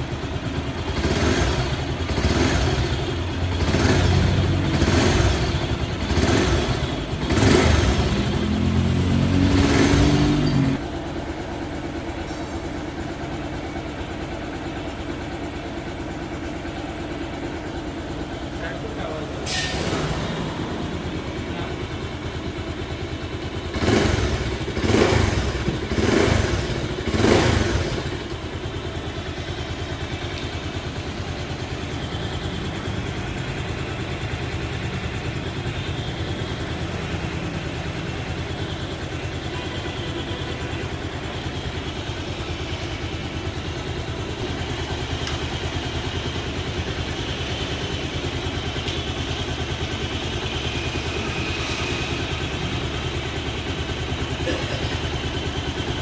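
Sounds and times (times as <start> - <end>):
motorcycle engine idling and revving: 0.0 - 56.0.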